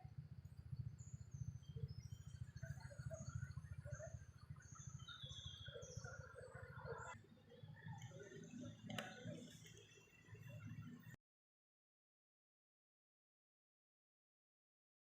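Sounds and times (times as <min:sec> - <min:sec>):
bird chirps: 0:00.9 - 0:09.6.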